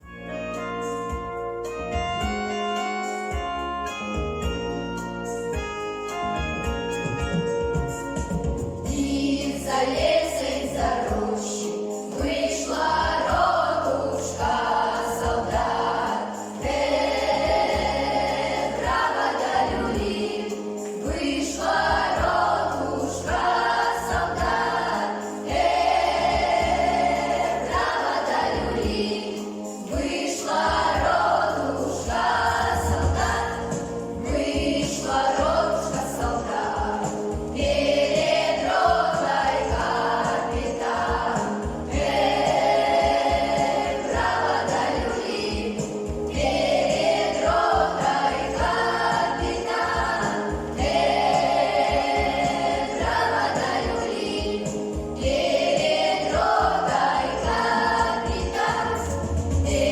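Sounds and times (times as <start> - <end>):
instrumental accompaniment: 0.0 - 59.9
children singing in chorus: 8.9 - 59.9.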